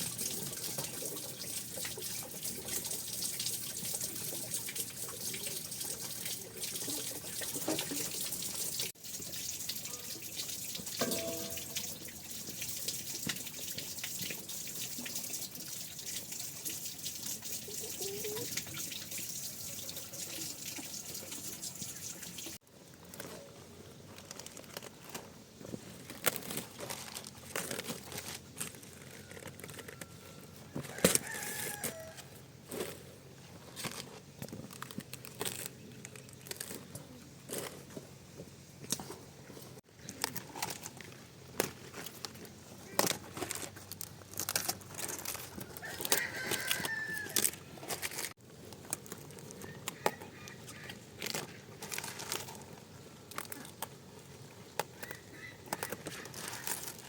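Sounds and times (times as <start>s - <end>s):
tap water running into basin: 0.0s - 22.6s.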